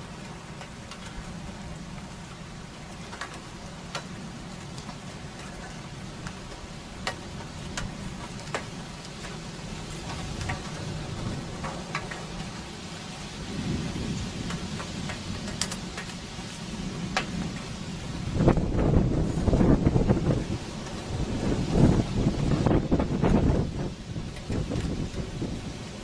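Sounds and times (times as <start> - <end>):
hailstones ticking on hard surfaces: 0.0 - 26.0
rain hissing: 0.0 - 26.0.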